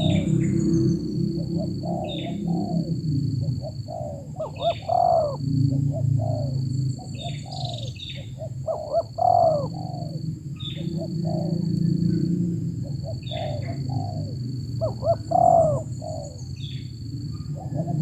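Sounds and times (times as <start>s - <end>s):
low rumble: 0.0s - 4.5s, 5.2s - 18.0s
doves cooing: 0.0s - 18.0s
high insect drone: 0.0s - 18.0s.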